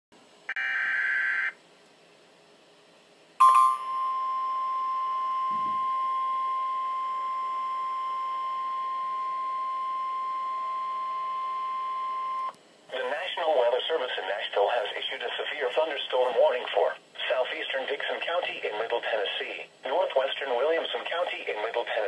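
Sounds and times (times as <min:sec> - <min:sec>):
steady warning alarm tone: 0:00.5 - 0:01.6, 0:03.4 - 0:12.5
click: 0:12.4 - 0:12.6.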